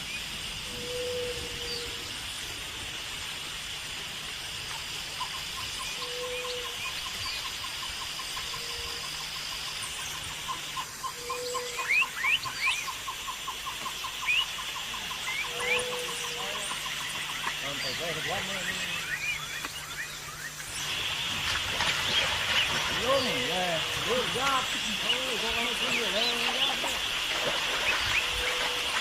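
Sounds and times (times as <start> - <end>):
high insect drone: 0.0 - 29.0
soft low hoot: 0.6 - 2.1, 15.0 - 16.8
rapid pulsing animal call: 0.6 - 2.2, 5.1 - 29.0
short rising whistled calls: 14.2 - 21.3.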